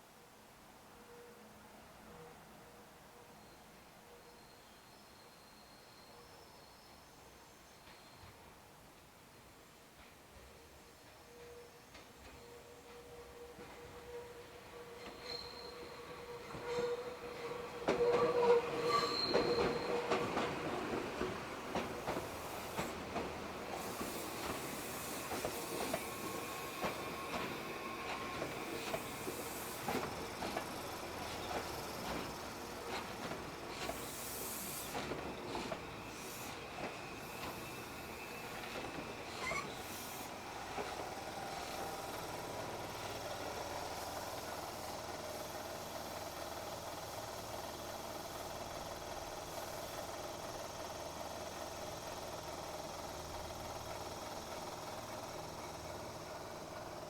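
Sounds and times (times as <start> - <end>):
train wheels squealing: 11.2 - 57.0.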